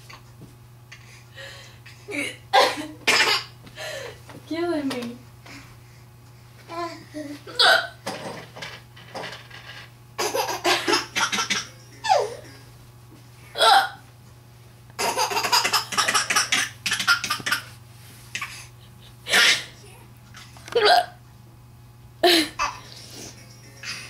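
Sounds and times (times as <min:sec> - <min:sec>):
woman hiccuping: 0:07.5 - 0:08.0, 0:13.6 - 0:14.0, 0:20.7 - 0:21.2
rapid laughter: 0:22.2 - 0:24.0.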